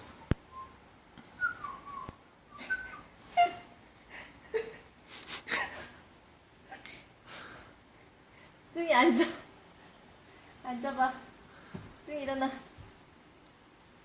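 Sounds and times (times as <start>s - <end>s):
puppy whining: 2.6s - 3.8s.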